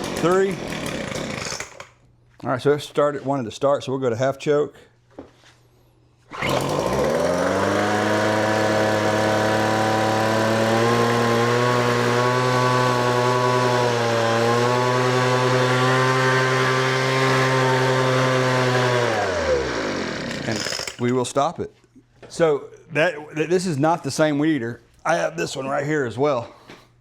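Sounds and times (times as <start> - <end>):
leaf blower engine running: 0.0 - 1.7, 6.3 - 21.0
rope pull starter: 0.0 - 2.0, 6.3 - 21.1.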